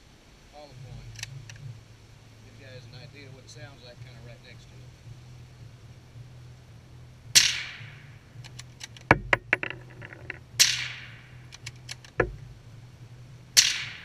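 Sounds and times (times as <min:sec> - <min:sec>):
suppressed rifle shots: 0:07.3 - 0:12.4, 0:13.6 - 0:14.0
sharp clicks and knocks: 0:08.4 - 0:10.8, 0:11.5 - 0:12.5.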